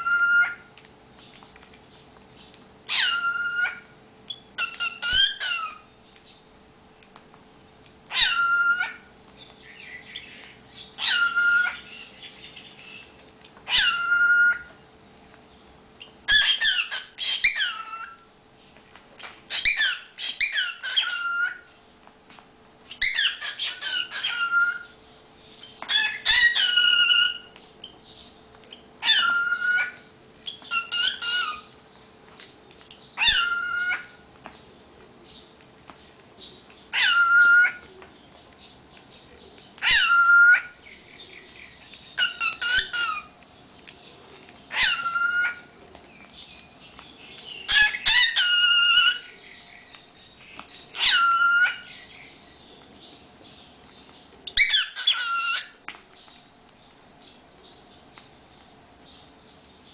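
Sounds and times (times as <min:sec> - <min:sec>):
cockatiel calling and whistling: 0:00.0 - 0:00.7, 0:02.9 - 0:05.9, 0:08.1 - 0:09.1, 0:11.0 - 0:13.1, 0:13.7 - 0:14.8, 0:16.0 - 0:18.2, 0:19.5 - 0:21.7, 0:22.9 - 0:25.0, 0:25.8 - 0:27.6, 0:28.7 - 0:31.7, 0:33.2 - 0:34.2, 0:36.9 - 0:37.9, 0:39.8 - 0:40.8, 0:42.2 - 0:43.3, 0:44.7 - 0:45.7, 0:47.6 - 0:49.4, 0:50.9 - 0:52.1, 0:54.4 - 0:55.8.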